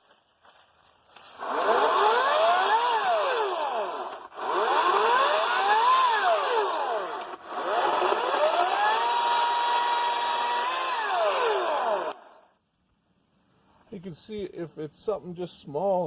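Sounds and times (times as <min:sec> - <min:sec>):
electric chainsaw whining: 0:01.4 - 0:12.5.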